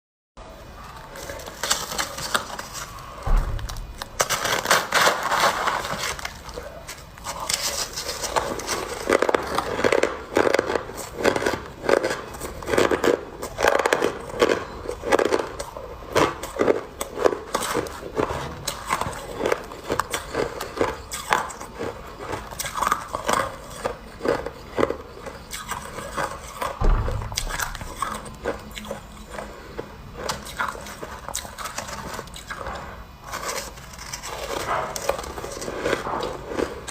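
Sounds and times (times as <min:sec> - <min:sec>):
shaved ice crunching: 0:04.2 - 0:15.4.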